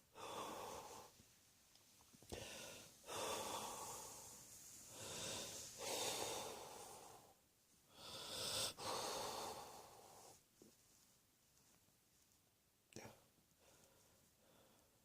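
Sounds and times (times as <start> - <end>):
person breathing heavily: 0.0 - 1.2, 2.3 - 10.4, 13.6 - 15.0.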